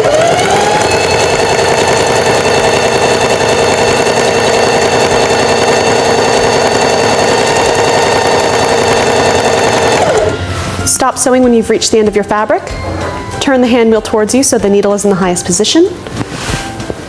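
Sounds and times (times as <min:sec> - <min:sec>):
sewing machine running: 0:00.0 - 0:10.5.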